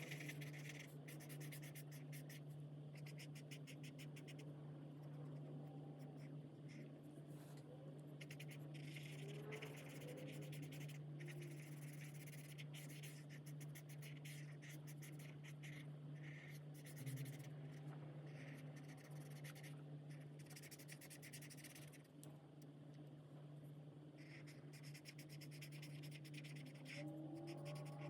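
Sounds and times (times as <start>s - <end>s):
marker nibs scratching paper: 0.0s - 2.4s, 3.0s - 4.4s, 8.2s - 22.1s, 24.2s - 28.0s
steady low hum: 0.0s - 28.0s.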